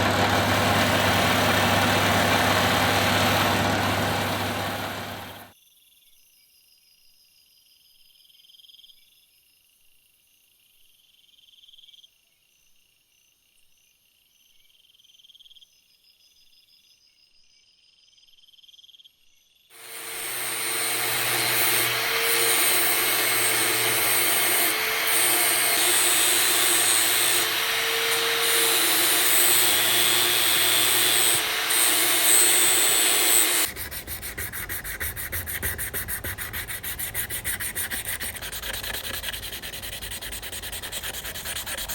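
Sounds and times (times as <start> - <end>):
power sander hissing: 0.0 - 5.5, 19.8 - 41.9
fast even rasping: 19.8 - 41.9.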